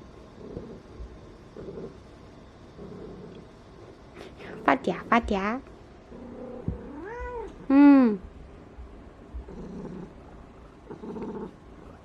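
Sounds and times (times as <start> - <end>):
cat purring: 0.0 - 8.2, 9.2 - 12.0
cat meowing: 6.8 - 7.6.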